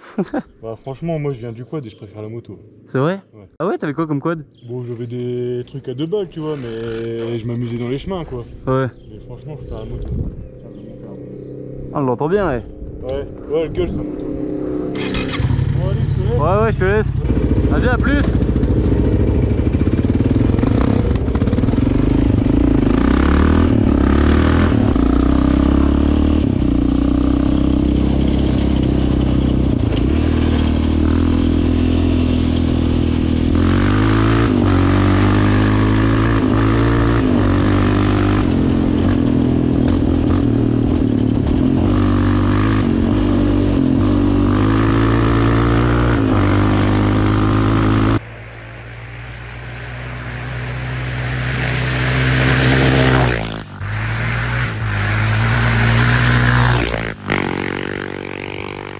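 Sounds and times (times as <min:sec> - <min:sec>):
quad engine revving: 0:06.4 - 0:08.0, 0:13.9 - 0:48.2, 0:50.2 - 0:58.9.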